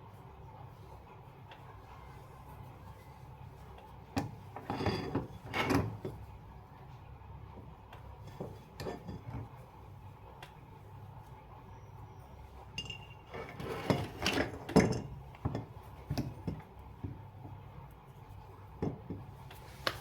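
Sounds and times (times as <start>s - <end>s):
metal tools clattering and clinking: 4.6s - 6.1s, 12.8s - 16.4s.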